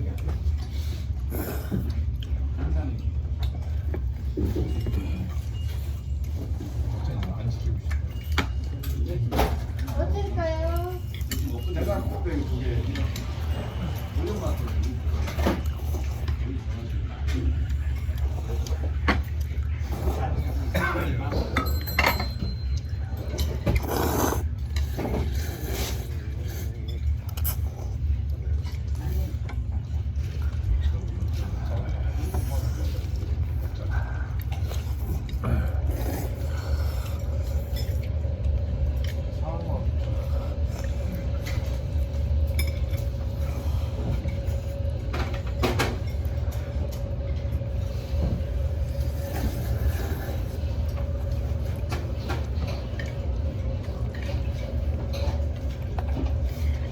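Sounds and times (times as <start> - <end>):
steady low hum: 0.0 - 56.9
noodles slurped and chewed: 11.0 - 21.6, 23.0 - 56.9.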